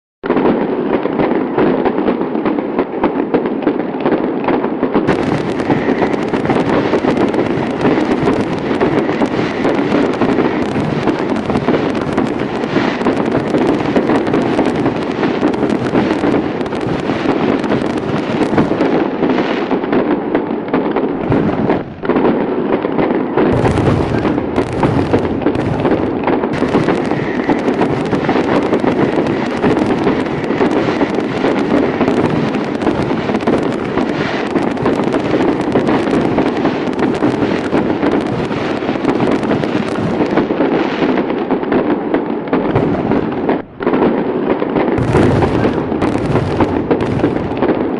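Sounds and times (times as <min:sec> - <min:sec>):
fireworks crackling and popping: 0:00.2 - 0:47.9.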